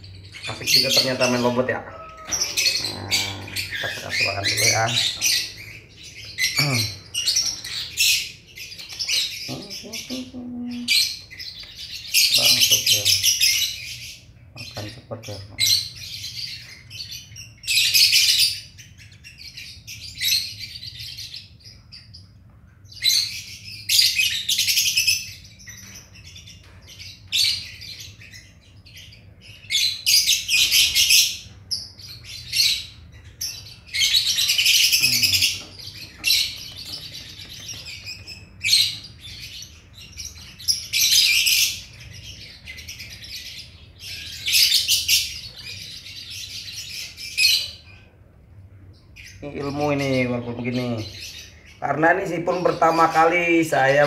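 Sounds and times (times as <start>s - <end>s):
bird chick begging calls: 0.5s - 5.6s.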